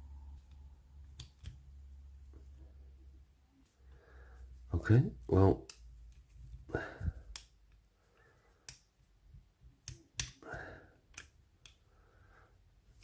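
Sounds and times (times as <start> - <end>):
padlock parts clicking: 1.0 - 1.7, 7.3 - 7.8, 8.6 - 9.0, 9.8 - 11.8.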